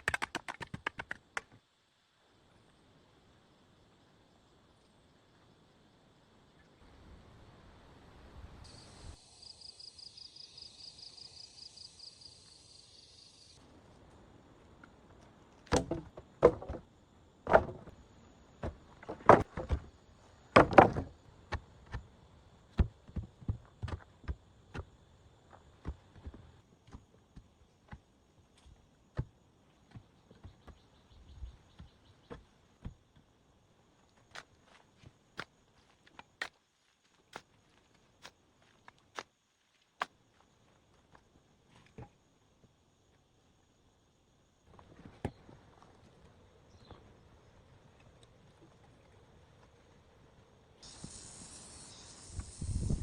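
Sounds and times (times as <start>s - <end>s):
sharp knocks and thuds: 15.7s - 18.0s, 18.6s - 19.9s, 20.5s - 22.1s, 22.7s - 24.9s, 25.8s - 33.3s.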